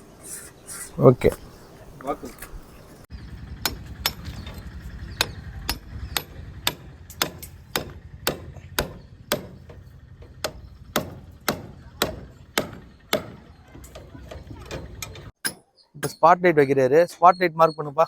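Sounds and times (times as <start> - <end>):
hammer striking with a ring: 3.6 - 17.8.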